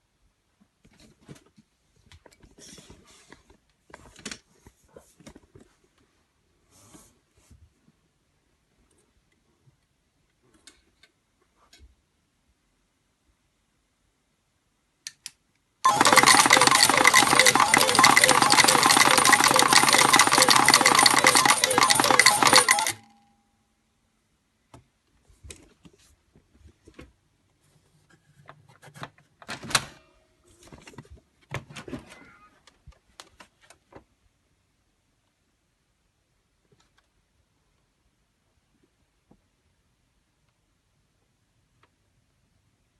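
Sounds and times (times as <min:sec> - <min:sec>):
metal tokens pouring into tray: 0:15.9 - 0:23.0
tokens clinking: 0:15.9 - 0:23.1.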